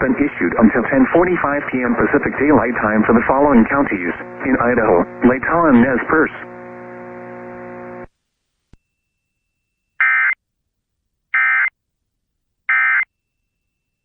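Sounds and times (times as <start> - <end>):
steady droning tone: 0.0 - 8.1.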